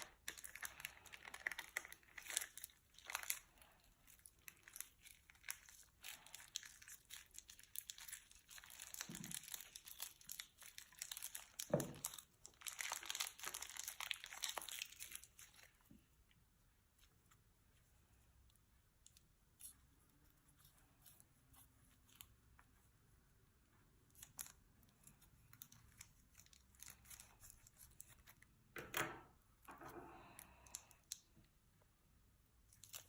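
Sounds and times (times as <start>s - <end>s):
plastic bag crinkling: 0.0s - 15.9s, 24.2s - 28.4s
sticky slime crackling: 0.0s - 15.9s.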